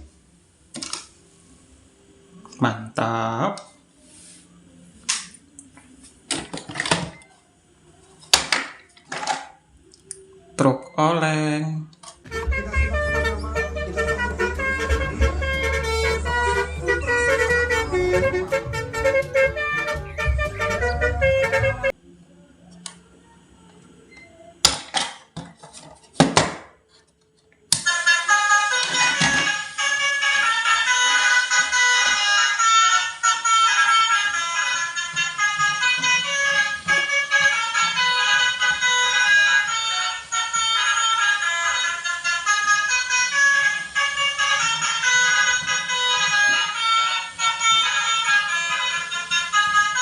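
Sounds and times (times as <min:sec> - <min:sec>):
background music: 0:12.3 - 0:22.0.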